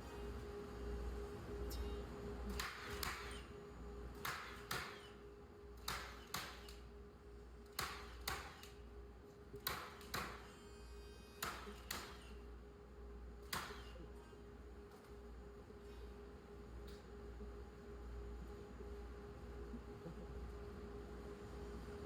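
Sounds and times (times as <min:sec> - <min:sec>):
steady hum: 0:00.0 - 0:22.0
nails driven into wood: 0:02.5 - 0:03.4, 0:04.2 - 0:05.1, 0:05.8 - 0:06.8, 0:07.6 - 0:08.8, 0:09.6 - 0:10.6, 0:11.4 - 0:12.4, 0:13.4 - 0:14.0.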